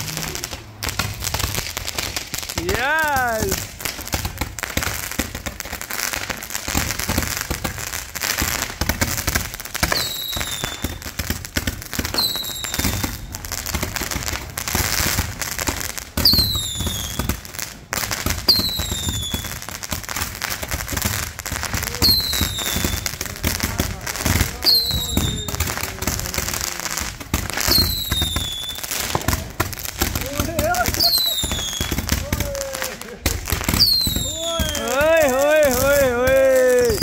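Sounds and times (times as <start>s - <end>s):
fireworks bangs: 0.0s - 37.0s
fireworks crackling: 0.0s - 37.0s
descending firework whistles: 9.8s - 11.0s, 12.1s - 13.3s, 16.2s - 17.3s, 18.5s - 19.7s, 21.8s - 23.2s, 24.4s - 29.2s, 30.6s - 33.0s, 33.6s - 37.0s.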